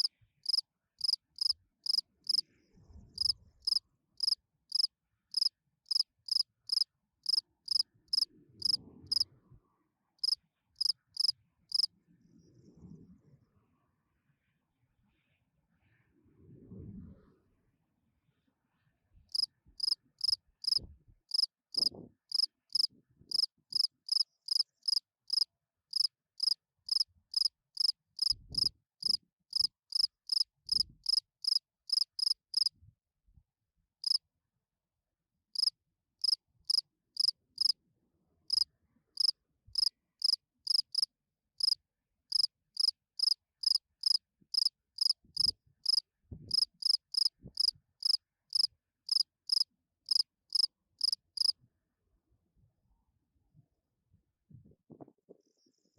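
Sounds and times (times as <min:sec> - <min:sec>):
field cricket chirping: 0:00.0 - 0:02.4, 0:03.2 - 0:09.2, 0:10.2 - 0:11.9, 0:19.3 - 0:32.7, 0:35.6 - 0:37.7, 0:39.2 - 0:51.5.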